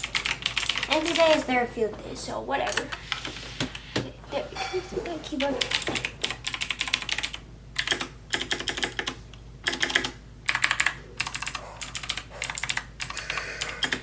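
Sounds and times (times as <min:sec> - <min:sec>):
keyboard typing: 0:00.0 - 0:01.5, 0:05.4 - 0:14.0.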